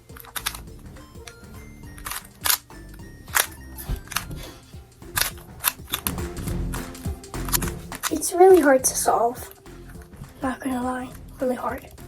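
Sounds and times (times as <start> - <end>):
background music: 0.0 - 12.0.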